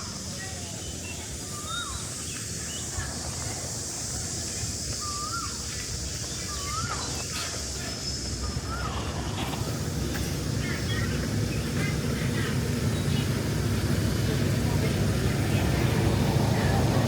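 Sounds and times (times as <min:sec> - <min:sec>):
steady high hiss: 0:00.0 - 0:17.0
bird whistling calls: 0:00.7 - 0:03.0, 0:04.9 - 0:09.2.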